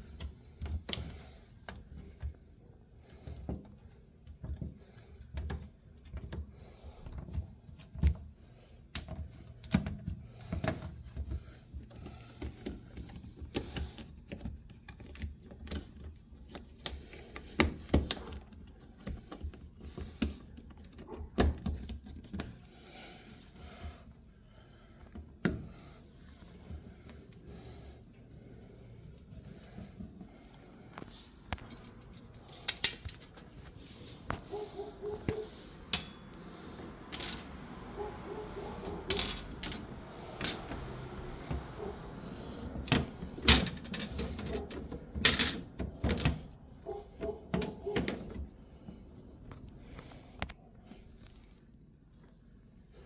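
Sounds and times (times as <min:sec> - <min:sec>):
handling knocks and clicks: 0:30.9 - 0:49.0.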